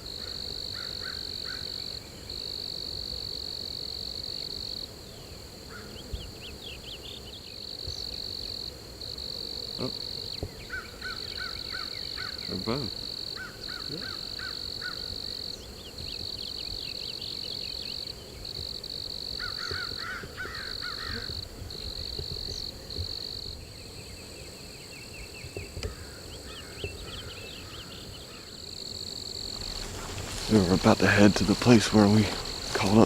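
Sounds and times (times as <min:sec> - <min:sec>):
high insect trill: 0:00.0 - 0:33.0
small birds chirping: 0:09.8 - 0:18.6, 0:19.4 - 0:28.6, 0:29.2 - 0:33.0.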